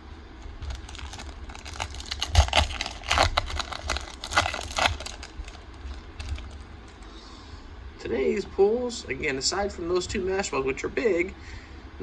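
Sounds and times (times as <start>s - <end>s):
foil wrapper crinkling: 0.4s - 7.2s.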